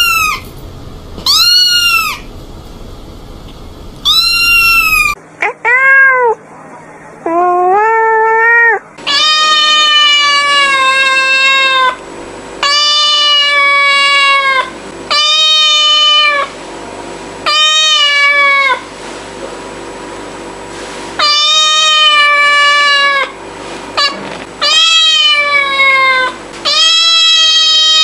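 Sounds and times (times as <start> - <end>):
cat meowing: 1.2 - 2.3, 4.0 - 6.4, 7.3 - 11.9, 24.6 - 28.0.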